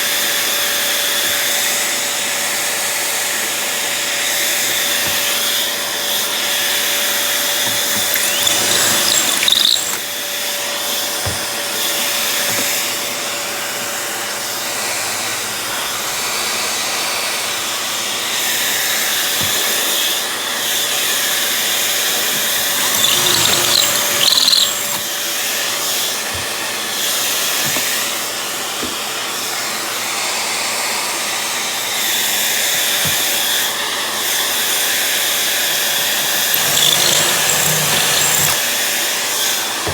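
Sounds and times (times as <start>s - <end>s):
power tool motor running: 7.6s - 10.1s, 22.3s - 25.1s, 35.8s - 38.6s.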